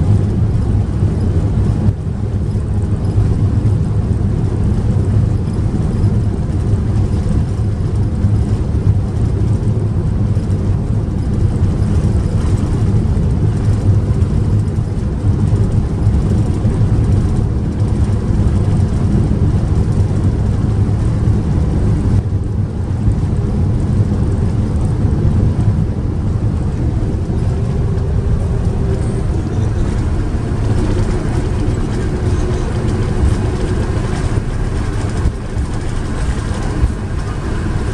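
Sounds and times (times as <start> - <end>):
airliner engine rumble in cabin: 0.0 - 37.9
faint steady hum: 21.9 - 37.9.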